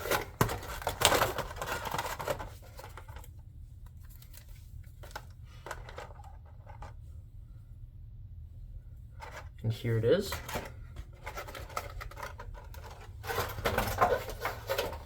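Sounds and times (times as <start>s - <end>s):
cardboard box scraping and rustling: 12.7s - 15.0s.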